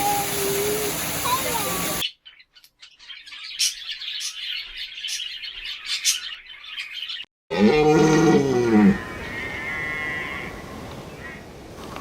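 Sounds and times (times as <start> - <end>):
small birds chirping: 0.0 - 7.3
loud wavering bleat: 7.5 - 11.4.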